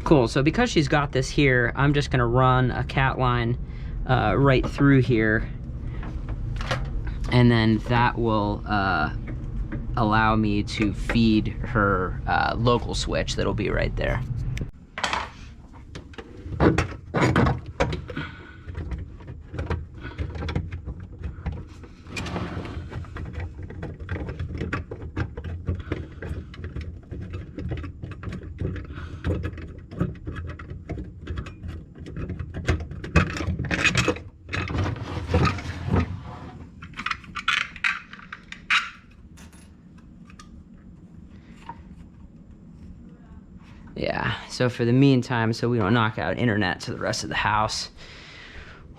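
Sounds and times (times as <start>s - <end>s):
cable and tools clicking and knocking: 14.1s - 36.1s, 36.7s - 43.2s.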